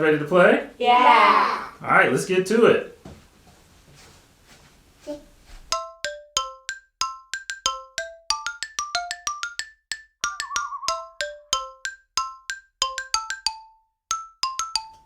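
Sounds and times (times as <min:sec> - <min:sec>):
bouncy mallet percussion melody: 0:05.7 - 0:15.0.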